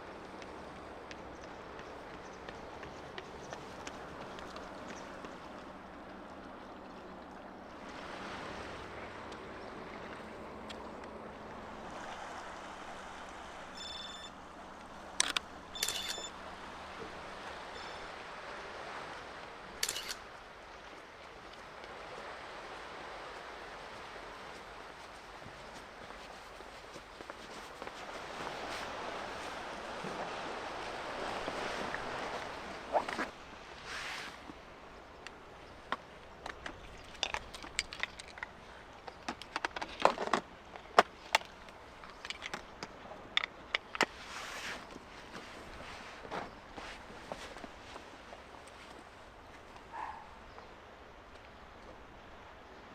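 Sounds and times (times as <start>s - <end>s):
soft rustle: 24.4s - 34.6s, 44.1s - 49.9s.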